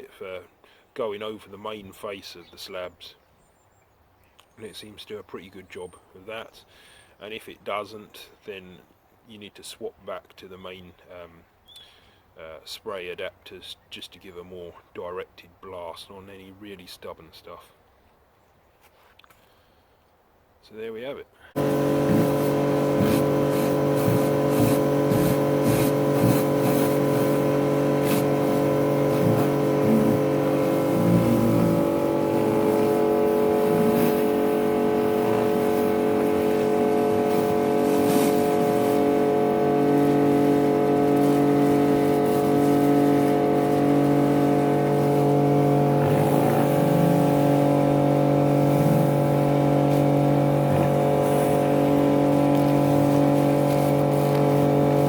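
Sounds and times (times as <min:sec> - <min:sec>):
electric pressure washer running: 0:21.6 - 0:55.0.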